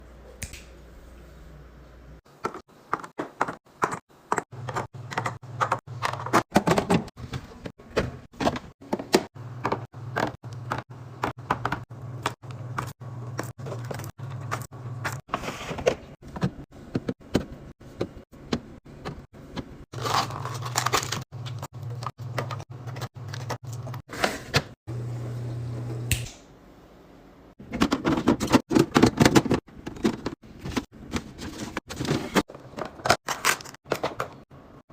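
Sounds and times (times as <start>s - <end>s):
containers clicking on fridge shelves: 2.4s - 15.2s, 27.6s - 34.4s
packaging rustling: 20.0s - 21.7s.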